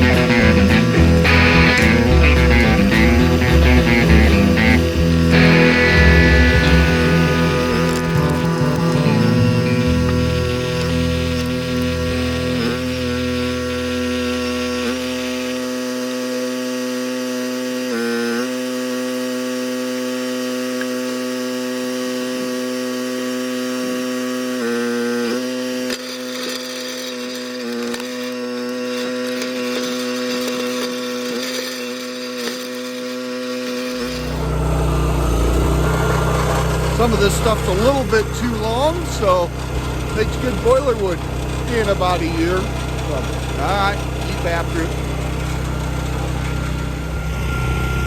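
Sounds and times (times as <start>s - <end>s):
log splitter engine running: 0.0s - 17.8s, 33.7s - 48.0s
wood being sawn and split: 0.0s - 48.0s.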